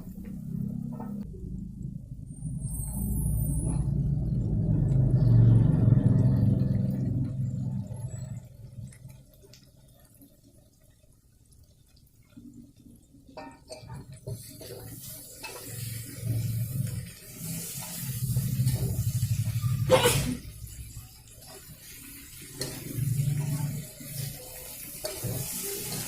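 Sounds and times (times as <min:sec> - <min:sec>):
running water hissing: 0:14.2 - 0:26.0.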